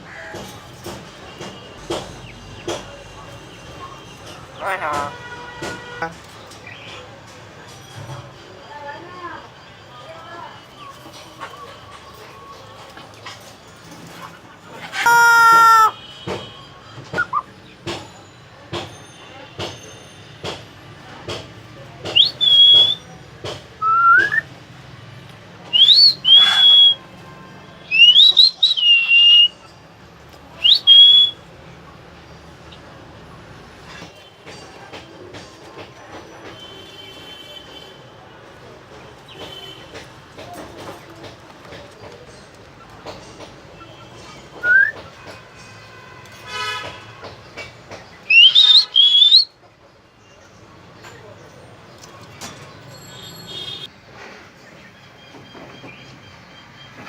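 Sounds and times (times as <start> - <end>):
nasal bird call: 14.8 - 16.0, 25.8 - 27.0, 27.9 - 29.5, 48.3 - 49.5
bird whistling: 22.1 - 23.1, 23.8 - 24.5, 25.7 - 27.0, 27.8 - 29.6, 30.6 - 31.4, 44.6 - 45.0, 48.3 - 49.6.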